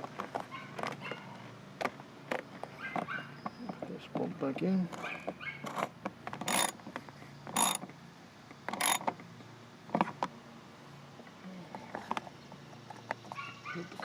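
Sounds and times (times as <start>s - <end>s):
mechanical clicking and rattling: 5.0s - 6.8s, 7.5s - 7.8s, 8.7s - 9.1s.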